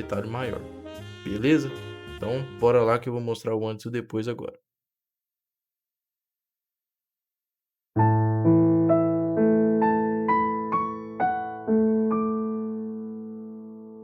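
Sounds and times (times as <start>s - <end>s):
low piano chord: 8.0s - 14.0s
piano notes climbing in pitch: 8.0s - 14.0s.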